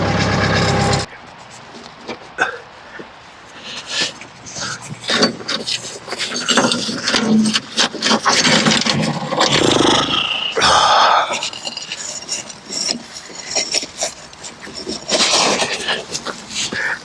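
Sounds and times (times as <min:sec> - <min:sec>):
engine running: 0:00.0 - 0:01.1
metal clanks and scrapes: 0:04.0 - 0:10.0, 0:11.3 - 0:16.8.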